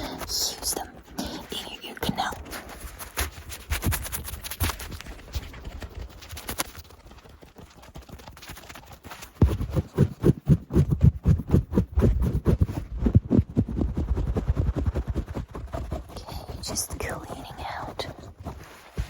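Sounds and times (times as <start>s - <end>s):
scratchy sounds: 0.0s - 6.9s, 7.7s - 19.0s
low thumping and rubbing: 9.4s - 17.2s.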